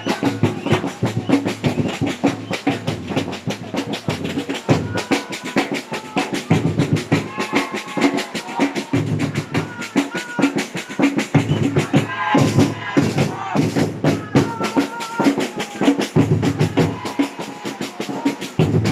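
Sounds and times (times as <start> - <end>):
samba drum ensemble: 0.0 - 18.9
deep bass drum beat: 5.9 - 10.2, 11.2 - 17.7, 18.4 - 18.9.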